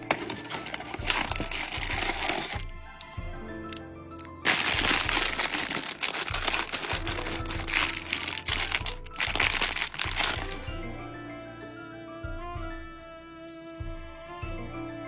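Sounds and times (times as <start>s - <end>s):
packaging crinkling and rustling: 0.0s - 10.7s
background music: 0.0s - 15.0s.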